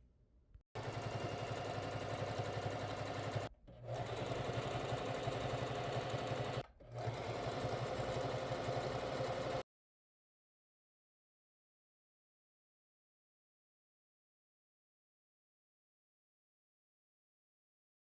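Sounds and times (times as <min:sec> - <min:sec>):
sewing machine running: 0:00.8 - 0:09.6.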